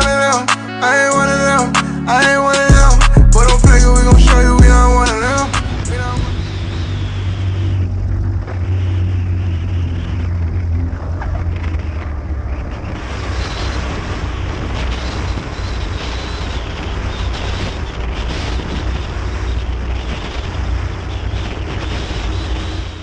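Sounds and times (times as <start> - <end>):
aircraft engine droning in cabin: 5.1 - 23.0.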